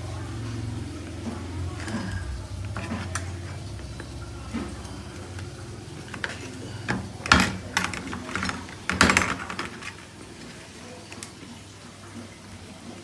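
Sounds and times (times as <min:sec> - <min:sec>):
sharp knocks and clatters: 0:01.8 - 0:10.1.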